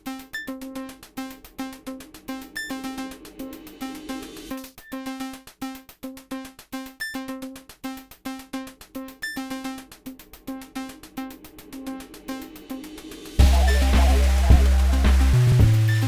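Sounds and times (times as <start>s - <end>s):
bouncy synthesizer music with beat: 0.0s - 16.0s.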